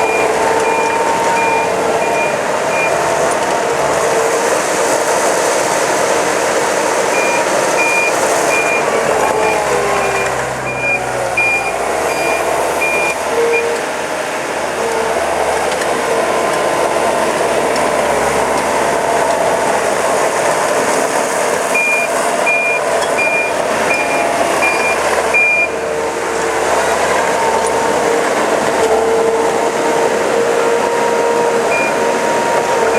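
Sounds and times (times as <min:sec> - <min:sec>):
backup alarm beeping: 0:00.0 - 0:03.0, 0:07.1 - 0:13.8, 0:21.7 - 0:25.8, 0:31.7 - 0:32.0
diesel engine running: 0:00.0 - 0:32.9.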